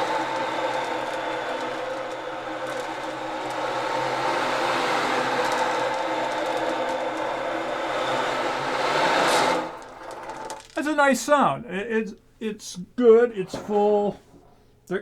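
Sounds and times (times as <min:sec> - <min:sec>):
ocean drum beads rolling: 0:00.0 - 0:11.6.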